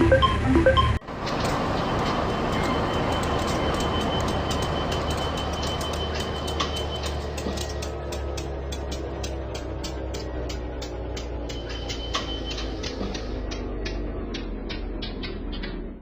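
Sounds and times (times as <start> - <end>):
train rumbling on rails: 0.0 - 16.0
rapid sharp ticks: 3.5 - 15.9.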